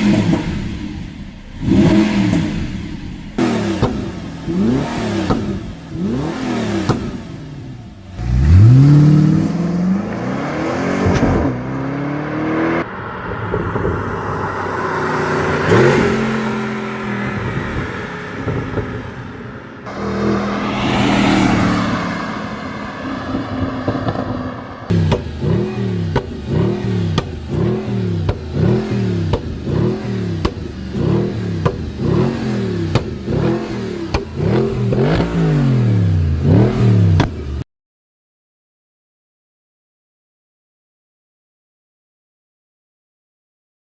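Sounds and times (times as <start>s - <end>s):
exhaust pops and crackles: 0.0s - 6.0s, 23.8s - 32.3s, 32.9s - 33.4s
car engine revving: 0.0s - 37.6s.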